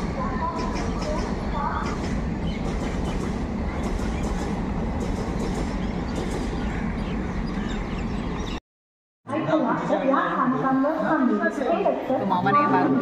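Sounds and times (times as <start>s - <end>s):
train rumbling on rails: 0.0s - 8.6s.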